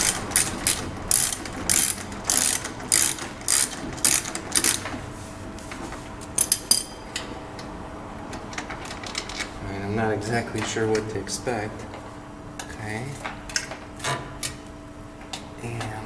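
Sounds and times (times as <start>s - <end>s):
socket ratchet wrench clicking: 0.0s - 4.8s.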